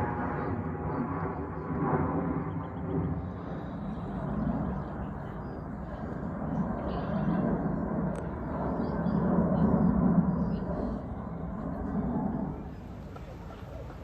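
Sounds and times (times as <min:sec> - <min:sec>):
distant traffic drone: 0:00.0 - 0:14.0.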